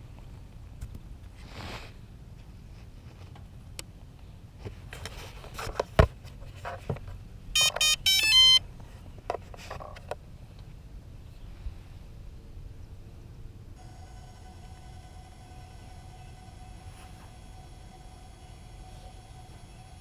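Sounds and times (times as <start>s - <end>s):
electronic start-up beeps: 7.6s - 8.6s, 13.8s - 20.0s.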